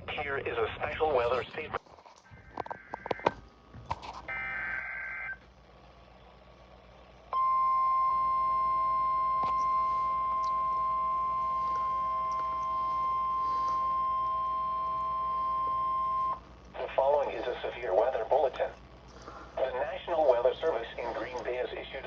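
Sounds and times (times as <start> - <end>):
steady warning alarm tone: 7.3 - 16.5.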